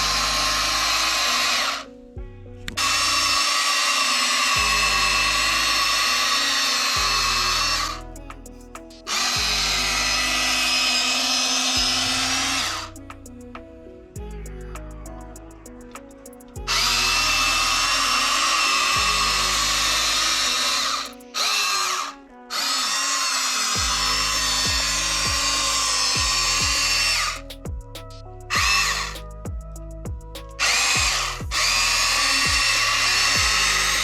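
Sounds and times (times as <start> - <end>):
background music with steady beat: 0.0 - 22.2, 23.7 - 34.0
electric motors whirring: 2.8 - 8.0, 9.0 - 13.0, 16.7 - 27.5, 30.6 - 34.0.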